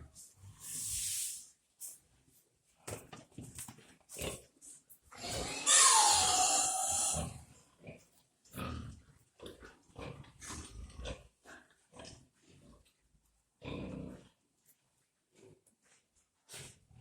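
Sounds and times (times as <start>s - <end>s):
pigs grunting: 5.1s - 12.9s, 13.6s - 14.4s.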